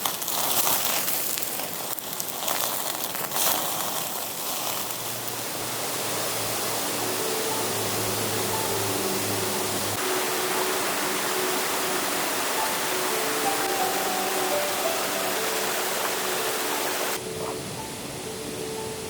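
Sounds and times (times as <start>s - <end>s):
campfire hissing and crackling: 0.0s - 19.0s
low hum of shifting tones: 5.7s - 13.2s.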